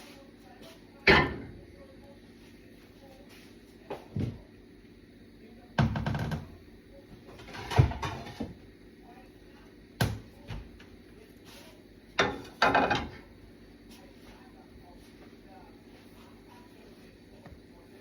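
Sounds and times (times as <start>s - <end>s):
cookware clattering: 7.3s - 8.6s, 12.2s - 13.2s.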